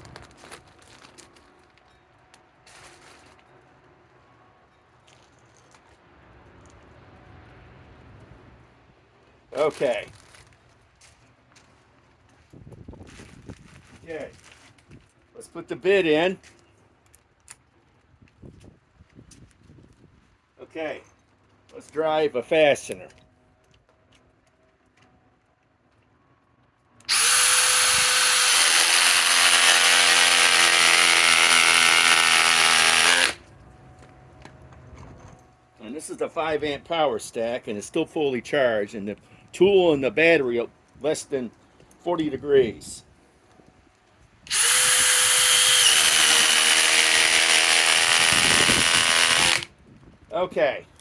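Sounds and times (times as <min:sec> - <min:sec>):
impact driver driving a fastener: 0:27.1 - 0:33.4, 0:44.5 - 0:49.7.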